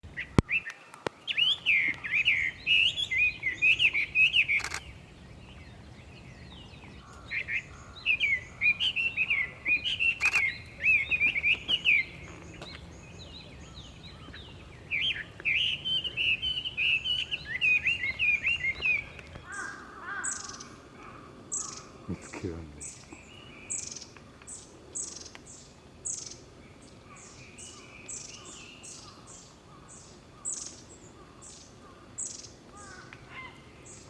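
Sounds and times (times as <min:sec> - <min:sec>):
bird singing whistled phrases: 0:00.2 - 0:04.8, 0:15.0 - 0:19.1.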